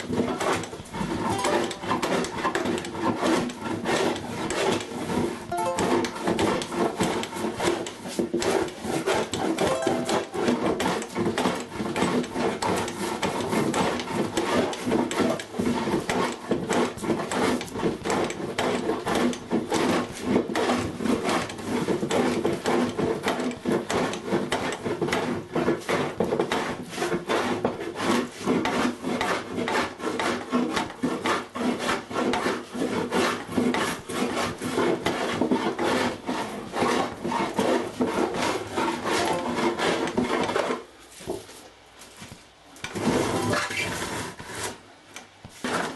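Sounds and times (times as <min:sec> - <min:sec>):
hand tool rasping wood: 0:00.0 - 0:41.4, 0:42.8 - 0:44.8, 0:45.5 - 0:45.9.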